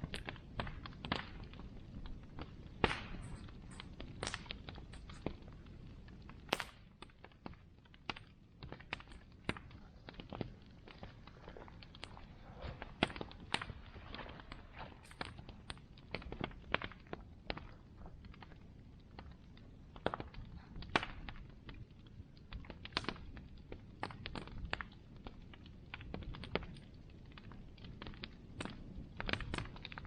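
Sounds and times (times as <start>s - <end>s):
low fire rumble: 0.0s - 30.0s
wood snapping and popping: 2.4s - 5.4s, 6.5s - 18.5s.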